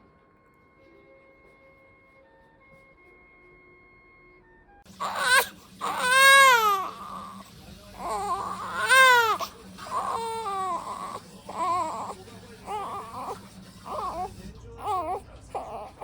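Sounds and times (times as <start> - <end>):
baby crying: 5.0 - 16.0.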